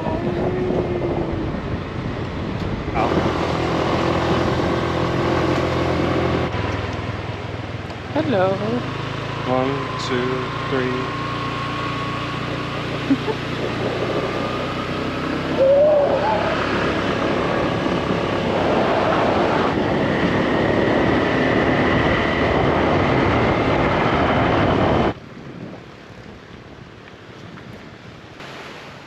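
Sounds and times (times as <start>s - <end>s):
wind buffeting microphone: 0.0s - 29.0s
faint high whine: 9.4s - 12.8s.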